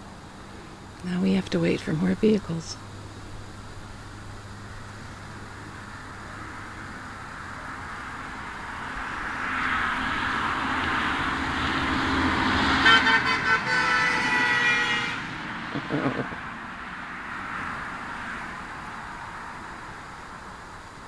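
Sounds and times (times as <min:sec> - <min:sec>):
car passing: 0:02.2 - 0:21.0.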